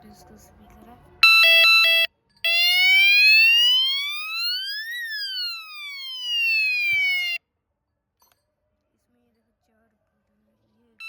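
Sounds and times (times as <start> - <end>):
siren wail: 1.2 - 7.4.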